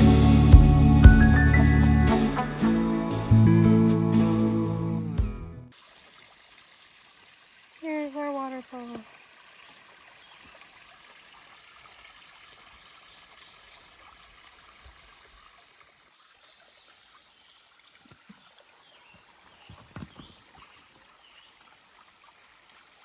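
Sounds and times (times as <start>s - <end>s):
small waterfall: 5.7s - 23.0s.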